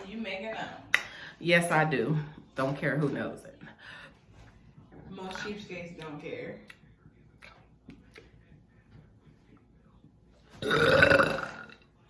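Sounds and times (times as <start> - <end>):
loud drawn-out burp: 10.6 - 11.9.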